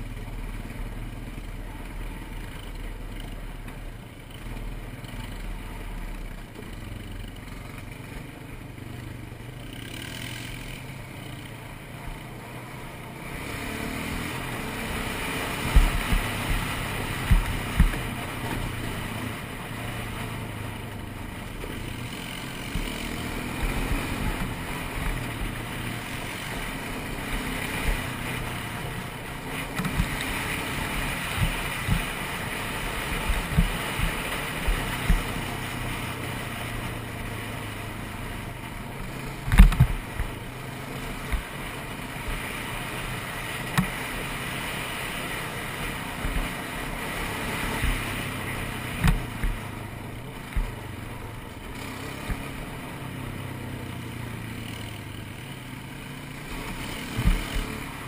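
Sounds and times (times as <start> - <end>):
atv engine running: 0.0 - 58.0
thumps from bumps: 15.6 - 18.7, 33.2 - 35.4, 39.4 - 40.4, 49.0 - 49.7, 57.1 - 57.7.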